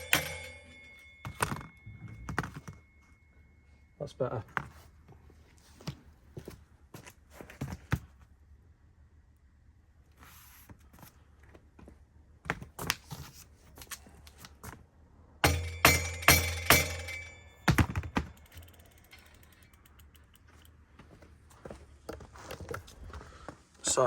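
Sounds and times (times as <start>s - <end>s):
hammer ringing strikes on metal: 0.0s - 4.3s, 15.4s - 19.6s.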